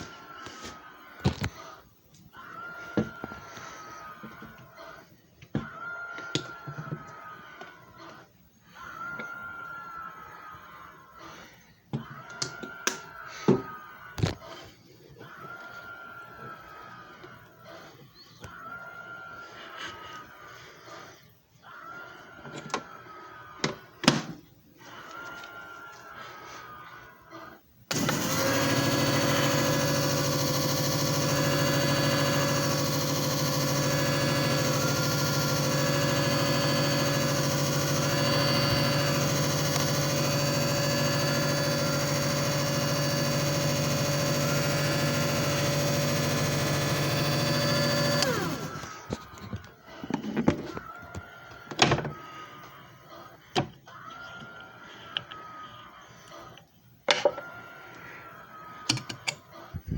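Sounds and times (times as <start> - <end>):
machine motor humming with whine: 27.9 - 49.3.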